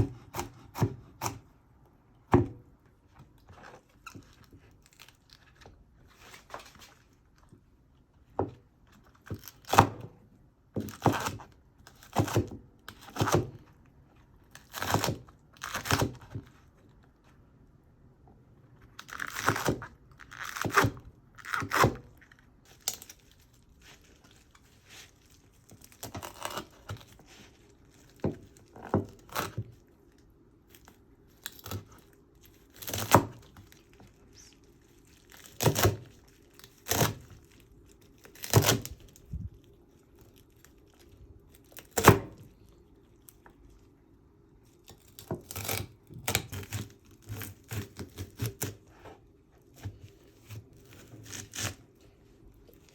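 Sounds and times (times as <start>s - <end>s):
food handling noises: 21.2s - 52.9s.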